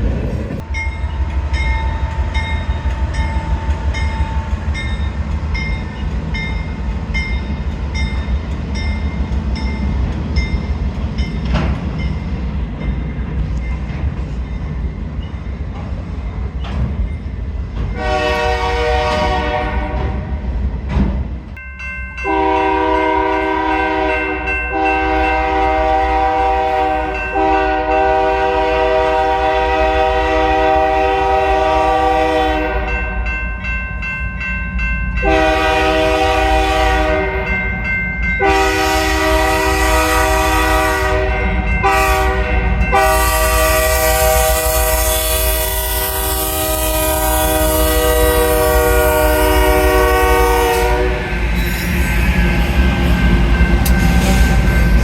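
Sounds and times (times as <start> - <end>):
freight train rumbling: 0.0 - 55.0
crossing bell ringing: 0.6 - 19.6, 21.6 - 29.0, 31.4 - 55.0
locomotive air horn blasts: 18.0 - 20.2, 22.3 - 33.2, 35.2 - 37.6, 38.4 - 51.4.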